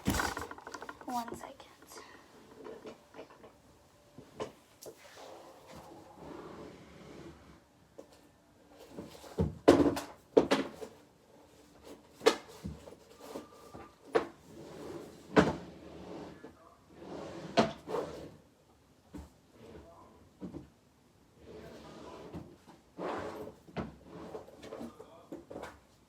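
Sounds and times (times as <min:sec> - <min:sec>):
rustling: 0:00.0 - 0:03.6
objects knocking and clattering: 0:00.0 - 0:04.6.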